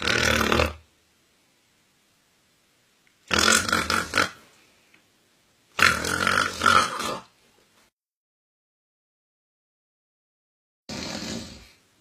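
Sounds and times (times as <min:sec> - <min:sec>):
man snoring loudly: 0:00.0 - 0:00.8, 0:03.3 - 0:04.4, 0:05.8 - 0:07.3, 0:10.9 - 0:11.8.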